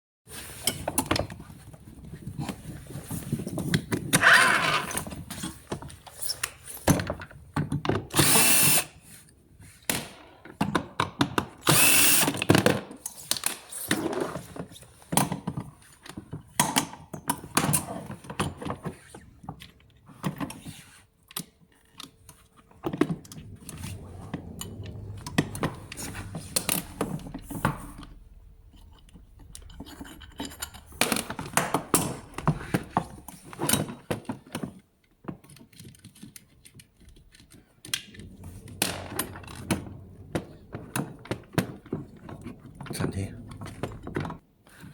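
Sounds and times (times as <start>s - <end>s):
power tool bursts: 8.2s - 8.9s, 11.6s - 12.4s
metal parts clicking and knocking: 21.8s - 33.9s.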